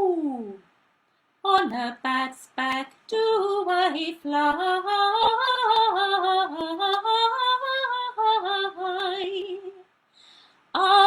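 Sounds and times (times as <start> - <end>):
woman singing long notes: 0.0 - 0.6.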